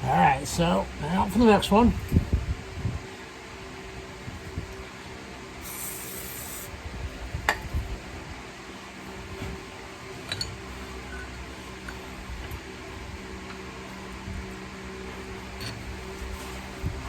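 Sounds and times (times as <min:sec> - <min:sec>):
steady background hum: 0:00.0 - 0:17.0
brief hiss: 0:05.6 - 0:06.7
small metallic clinks: 0:10.2 - 0:12.0.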